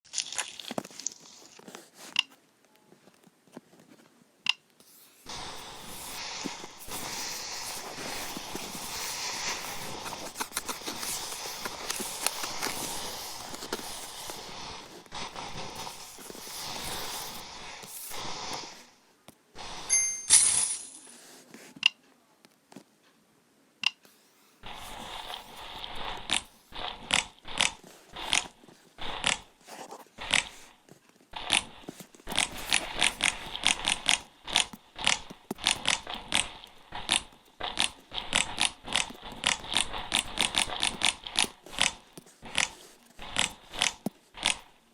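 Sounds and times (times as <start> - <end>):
slime squishing and popping: 31.4 - 44.8.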